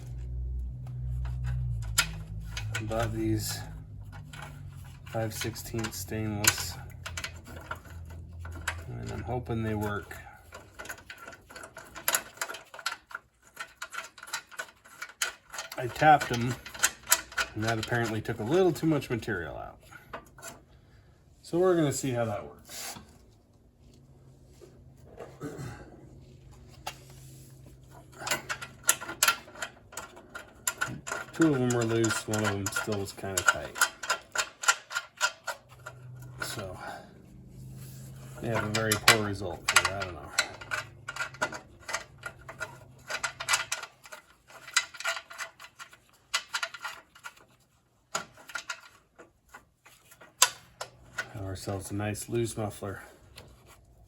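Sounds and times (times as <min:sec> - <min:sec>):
hand tools clicking on metal bolts: 0:00.9 - 0:19.2, 0:28.0 - 0:36.8, 0:38.4 - 0:52.0.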